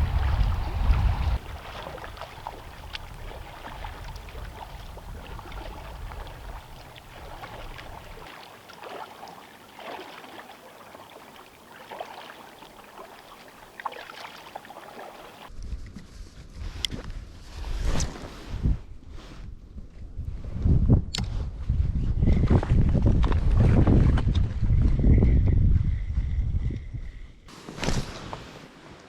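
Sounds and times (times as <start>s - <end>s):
wind buffeting microphone: 0.0s - 8.3s, 18.5s - 27.5s
water splashing and lapping: 0.0s - 15.5s.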